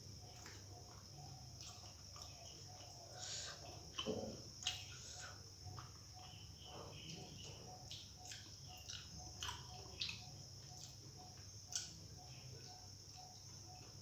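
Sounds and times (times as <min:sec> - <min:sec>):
crickets chirring: 0:00.0 - 0:14.0
person chewing food: 0:00.3 - 0:14.0.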